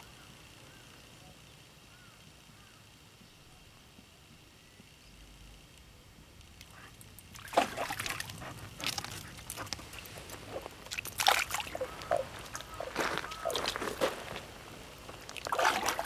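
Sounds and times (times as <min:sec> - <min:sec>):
pond water splashing: 0:06.9 - 0:16.0.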